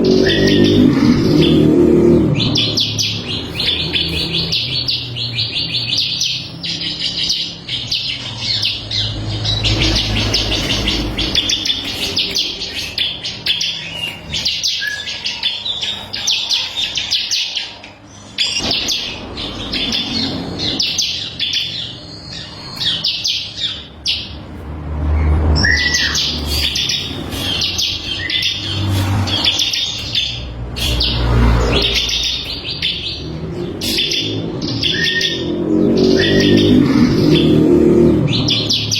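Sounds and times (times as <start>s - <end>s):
low rumbles: 0.0s - 6.0s
bird singing rapid high notes: 0.0s - 38.9s.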